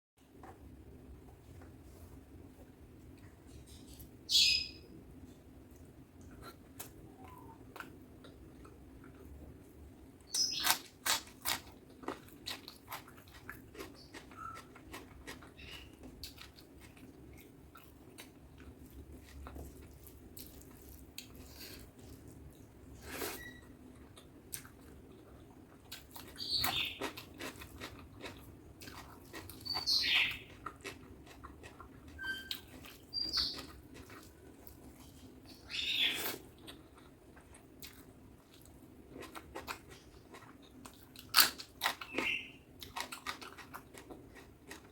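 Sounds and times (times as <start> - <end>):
wet chewing and smacking: 5.7 - 22.7, 24.0 - 35.6, 36.2 - 44.9.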